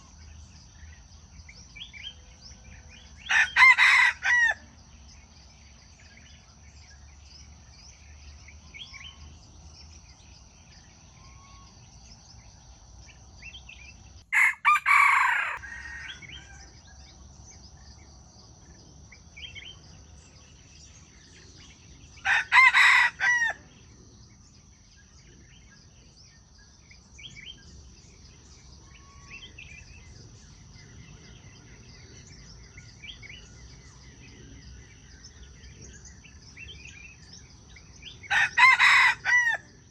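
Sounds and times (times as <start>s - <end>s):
rooster crowing: 3.3s - 4.6s, 14.3s - 16.8s, 22.2s - 23.6s, 38.3s - 39.6s
faint bird chirps: 5.0s - 22.3s.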